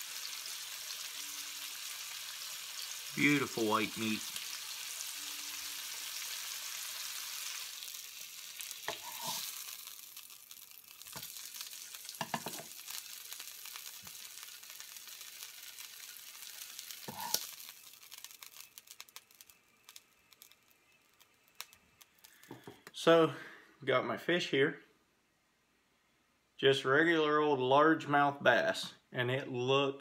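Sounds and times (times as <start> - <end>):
fish sizzling in a pan: 0.0 - 22.7.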